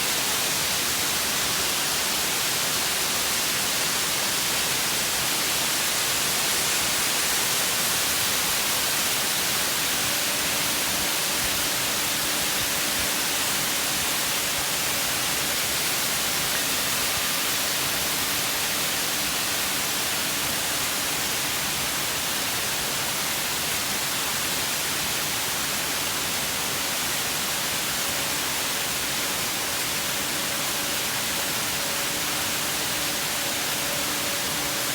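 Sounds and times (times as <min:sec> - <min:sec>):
waterfall rushing roar: 0:00.0 - 0:34.9
singing bowl ringing tones: 0:28.2 - 0:34.9.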